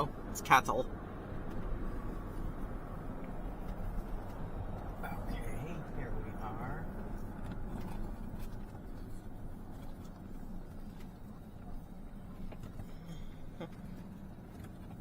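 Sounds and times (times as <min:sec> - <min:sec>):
car engine and tyres hum: 0:00.0 - 0:15.0.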